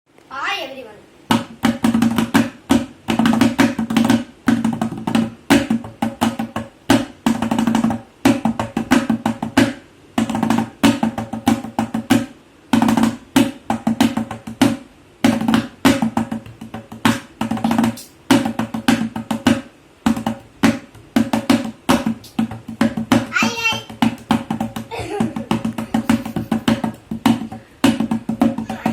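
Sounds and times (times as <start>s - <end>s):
tabla drum strokes: 1.3s - 28.9s.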